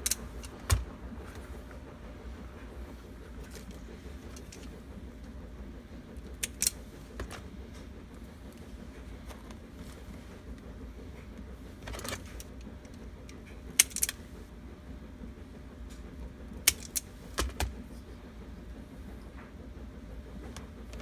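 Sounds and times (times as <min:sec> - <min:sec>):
steady low hum: 0:00.0 - 0:21.0
snips cutting wire: 0:06.3 - 0:07.3, 0:16.7 - 0:17.6.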